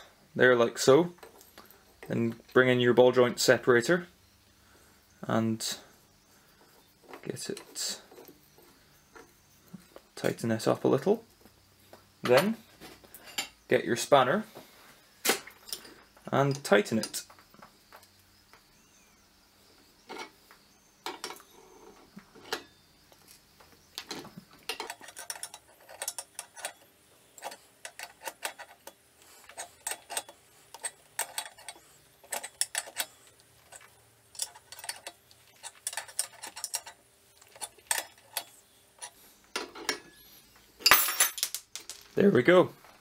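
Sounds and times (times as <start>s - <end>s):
spanner clicking on metal: 24.7s - 26.8s, 27.4s - 39.2s.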